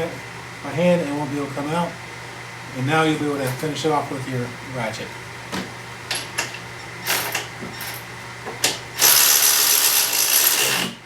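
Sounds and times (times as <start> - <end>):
ratchet wrench clicking: 9.0 - 10.9.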